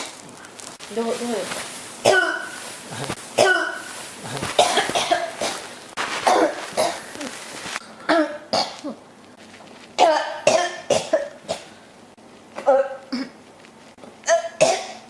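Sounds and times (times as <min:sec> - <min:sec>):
person coughing: 0:02.0 - 0:09.0, 0:12.6 - 0:13.4, 0:14.2 - 0:15.0.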